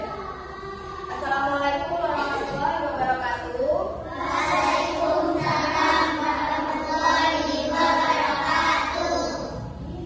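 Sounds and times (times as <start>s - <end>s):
children singing together: 4.1s - 10.0s.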